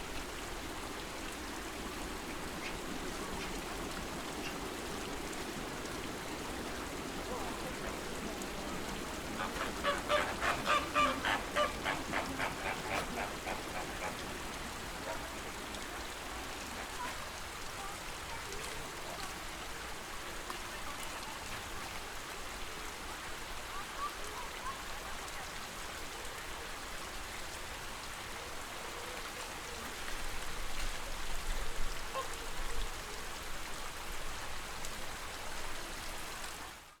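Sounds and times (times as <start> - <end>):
lake water washing: 0.0 - 37.0
flamingos honking: 7.1 - 15.8.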